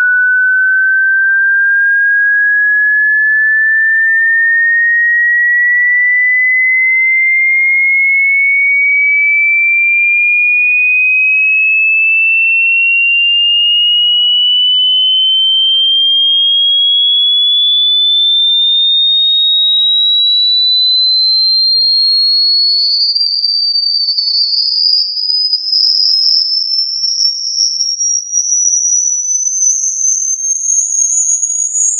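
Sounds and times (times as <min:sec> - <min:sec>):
sine-wave tone sweeping upward: 0:00.0 - 0:07.6, 0:12.7 - 0:21.0.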